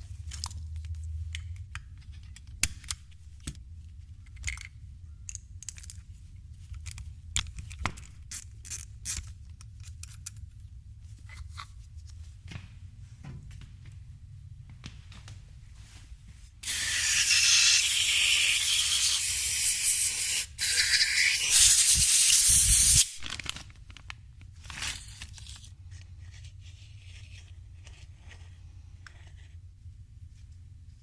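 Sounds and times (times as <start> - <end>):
small parts clicking and rattling: 4.2 - 6.1, 6.7 - 10.5
pressurised spray hissing: 16.6 - 23.2.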